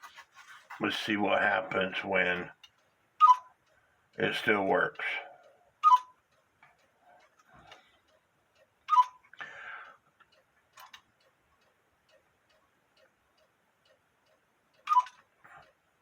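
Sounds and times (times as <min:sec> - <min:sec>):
clock mechanism whir and click: 0:00.0 - 0:16.0
clock ticking faintly: 0:00.0 - 0:16.0
cuckoo clock call: 0:03.2 - 0:03.6, 0:05.8 - 0:06.2, 0:08.8 - 0:09.4, 0:14.8 - 0:15.3.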